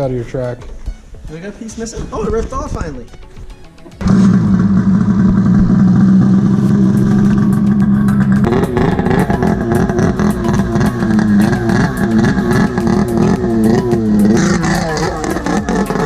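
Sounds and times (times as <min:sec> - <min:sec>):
snowmobile engine running: 0:04.0 - 0:16.0.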